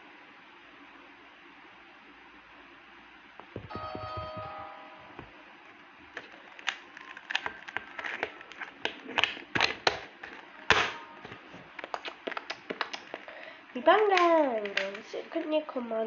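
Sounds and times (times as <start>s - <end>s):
short tone: 3.7s - 5.2s.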